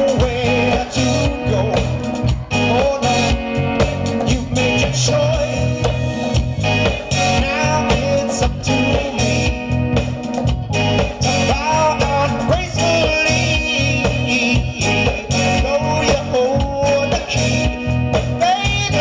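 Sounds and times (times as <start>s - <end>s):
soft rock band music: 0.0s - 19.0s.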